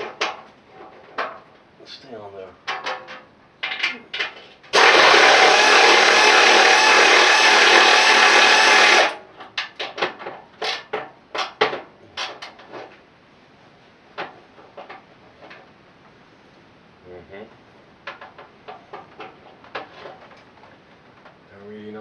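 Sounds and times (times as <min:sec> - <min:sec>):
air impact wrench running: 0:04.7 - 0:09.2.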